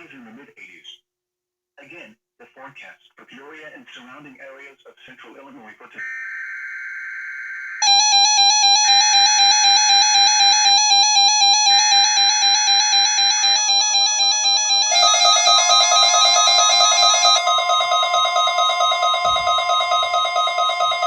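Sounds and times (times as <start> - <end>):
steady high electronic tone: 6.0 - 21.0.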